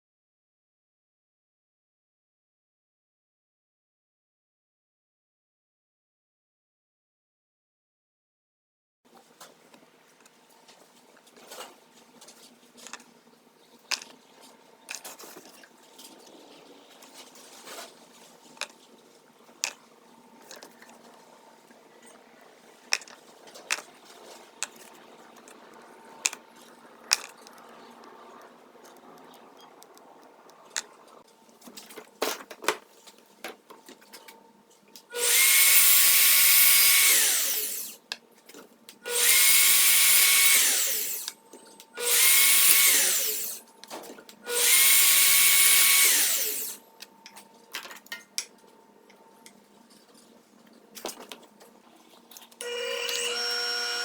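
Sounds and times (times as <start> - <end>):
handling clicks and knocks: 13.8 - 14.2
power tool motor running: 35.1 - 38.0, 39.1 - 41.4, 42.0 - 43.7, 44.4 - 46.9, 52.6 - 54.0.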